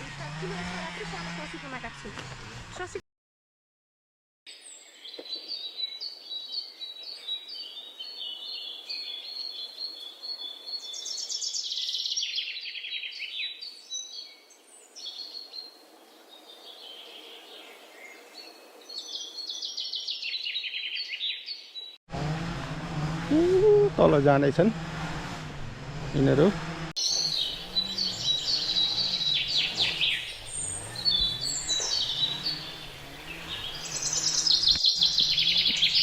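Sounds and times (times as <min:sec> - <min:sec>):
songbirds chirping and trilling: 0:04.5 - 0:22.0, 0:26.4 - 0:36.0.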